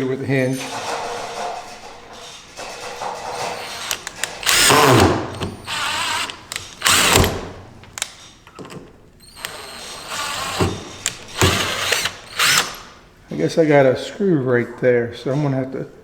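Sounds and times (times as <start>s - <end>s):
impact driver driving screws into wood: 3.6s - 8.2s, 9.4s - 13.0s.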